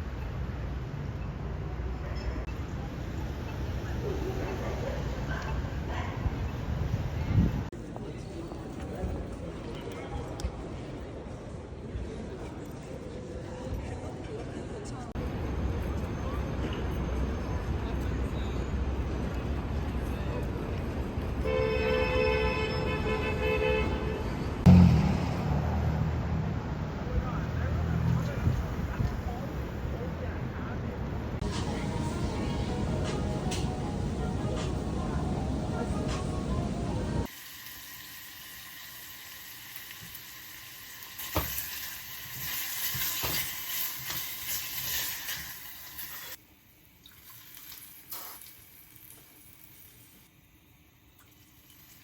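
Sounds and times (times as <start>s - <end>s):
vehicle horn: 21.4s - 24.4s
food sizzling in a pan: 37.2s - 46.4s, 47.2s - 50.2s.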